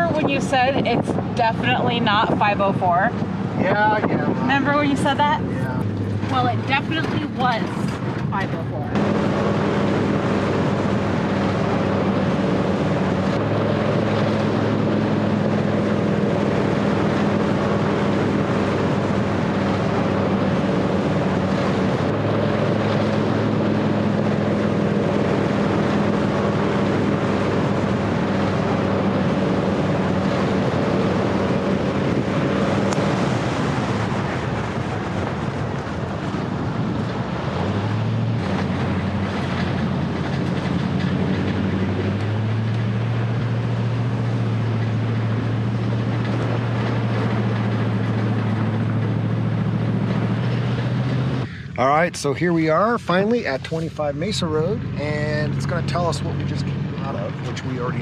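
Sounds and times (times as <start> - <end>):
tyre and wind noise: 0.0 - 51.8
engine hum inside car: 0.0 - 58.0.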